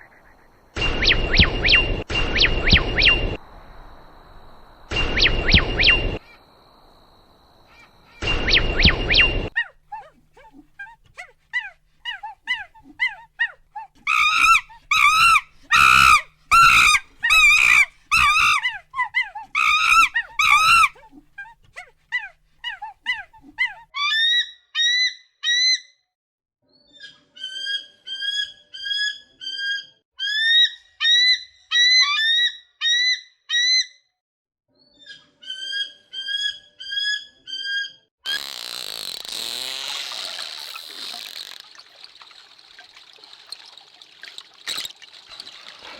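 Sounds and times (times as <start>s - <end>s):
animal chirping calls: 7.7s - 23.9s.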